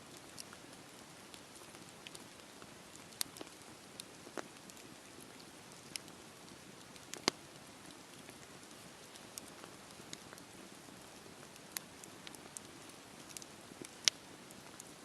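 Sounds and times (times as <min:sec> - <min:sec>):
wood crackling and popping: 0:00.0 - 0:15.0
campfire hissing: 0:00.1 - 0:15.0.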